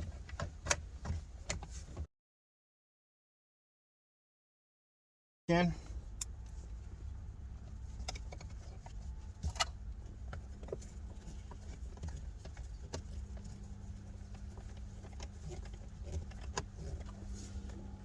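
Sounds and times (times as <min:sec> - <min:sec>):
steady low hum: 0:05.5 - 0:18.0.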